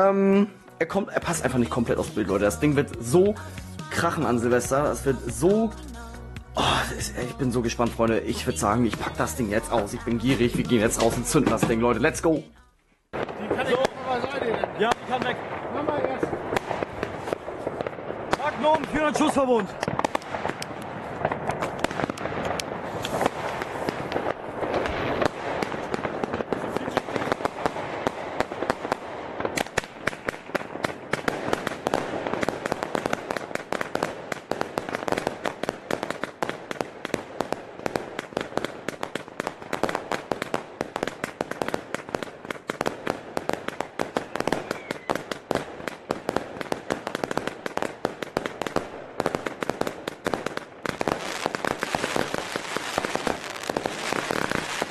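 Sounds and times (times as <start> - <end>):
rapid volley of firework shots: 13.1 - 54.9.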